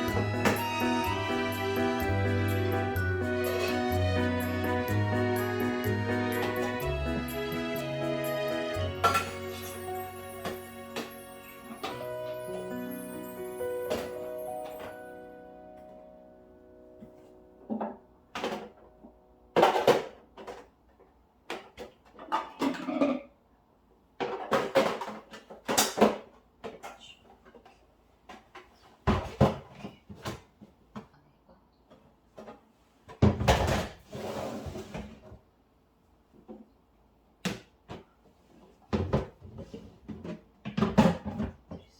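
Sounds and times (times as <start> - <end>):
knocks and clatters of objects: 19.6 - 23.2, 24.2 - 30.6, 37.5 - 41.8.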